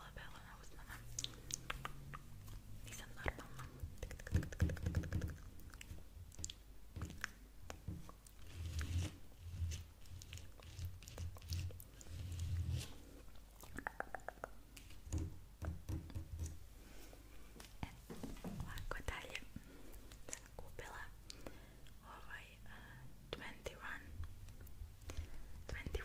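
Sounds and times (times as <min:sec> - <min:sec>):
wet mouth clicks and smacks: 0:01.1 - 0:02.6, 0:04.0 - 0:07.8, 0:13.6 - 0:14.9.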